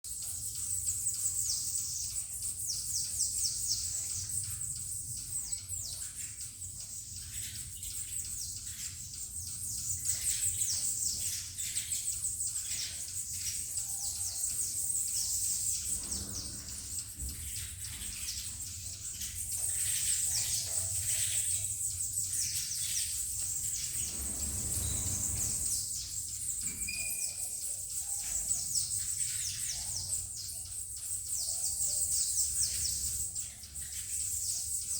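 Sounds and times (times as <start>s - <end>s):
finches chirping: 0.5s - 34.9s.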